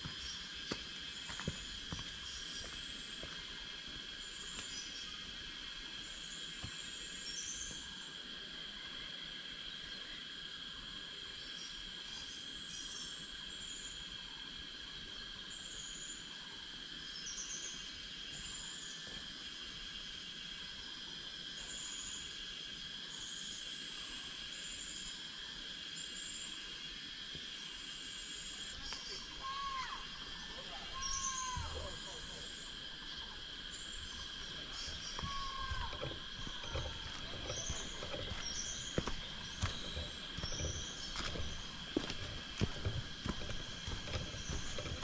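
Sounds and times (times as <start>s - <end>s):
insects droning: 0.0s - 45.0s
bird chirps: 33.7s - 42.9s.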